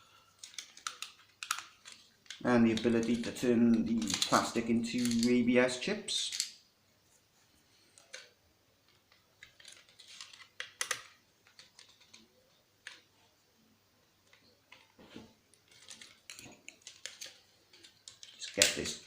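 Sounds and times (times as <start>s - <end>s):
plastic parts clicking: 0.4s - 5.4s, 6.3s - 6.6s, 7.9s - 8.3s, 8.9s - 13.1s, 15.5s - 19.0s.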